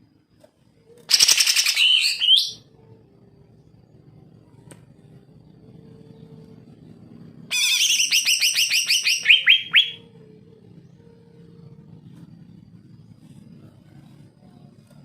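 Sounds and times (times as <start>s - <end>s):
bird singing whistled notes: 1.1s - 2.7s, 7.5s - 10.2s.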